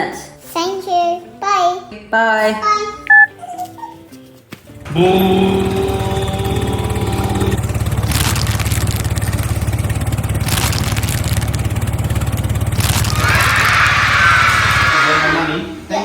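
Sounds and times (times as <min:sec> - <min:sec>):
vehicle engine running: 0:04.7 - 0:15.1.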